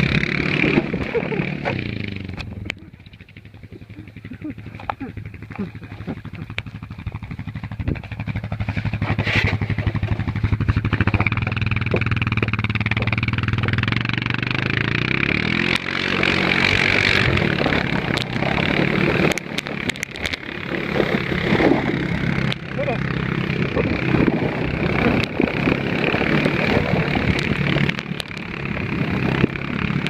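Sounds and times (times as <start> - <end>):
engine running: 0.0 - 30.0.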